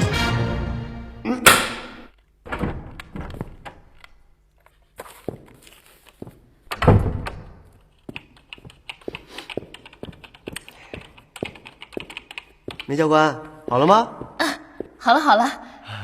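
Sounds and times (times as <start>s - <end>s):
keyboard typing clicks: 9.7s - 12.9s.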